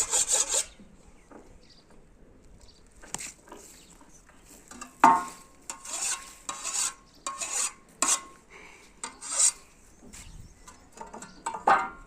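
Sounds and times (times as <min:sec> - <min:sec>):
file rasping on metal blade: 0:00.0 - 0:00.8, 0:05.7 - 0:08.3, 0:09.0 - 0:09.6.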